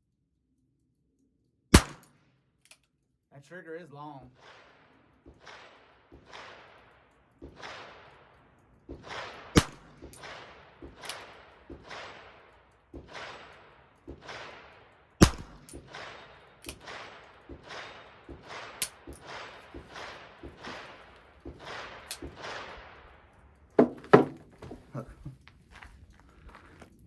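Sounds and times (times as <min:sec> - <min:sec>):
echoing gunshot reports: 0:01.8 - 0:02.1, 0:04.2 - 0:23.3.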